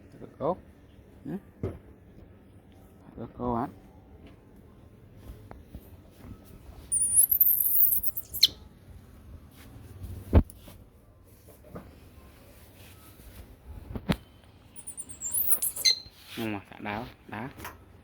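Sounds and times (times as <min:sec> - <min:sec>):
baby monkey squealing: 0:06.9 - 0:08.6, 0:14.8 - 0:16.2.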